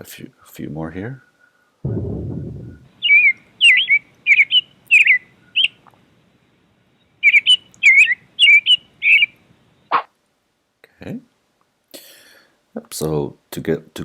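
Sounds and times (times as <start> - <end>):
swooping bird chirps: 1.9 - 5.8, 7.2 - 10.1.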